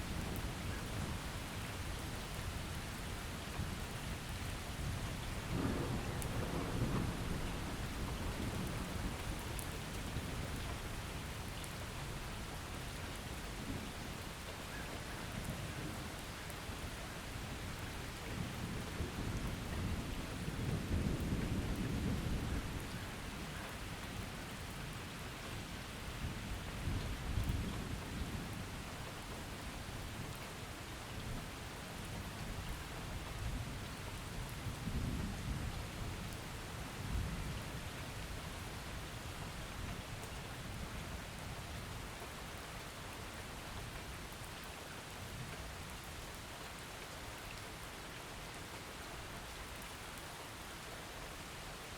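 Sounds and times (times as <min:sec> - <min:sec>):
steady rain: 0:00.0 - 0:51.9
rolling thunder: 0:05.4 - 0:09.1.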